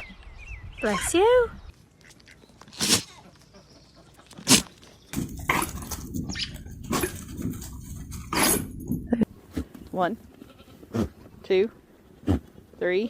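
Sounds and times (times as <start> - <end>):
short rough animal sounds: 2.6 - 3.2, 4.3 - 4.7
sheep sneezing: 2.7 - 3.1, 4.4 - 4.7.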